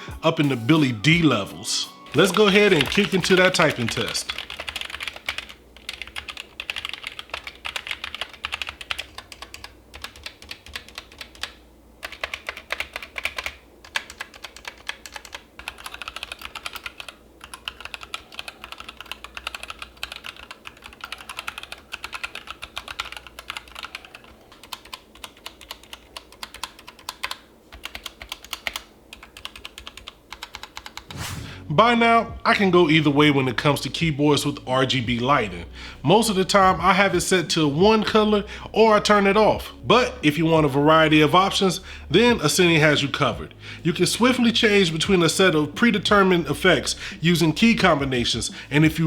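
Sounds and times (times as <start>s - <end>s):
mechanical keyboard typing: 2.1s - 31.1s.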